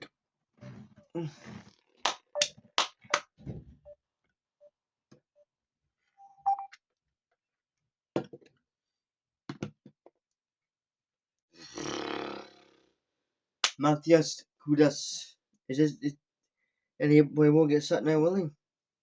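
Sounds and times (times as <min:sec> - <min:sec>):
sharp clicks and taps: 0:02.1 - 0:03.2.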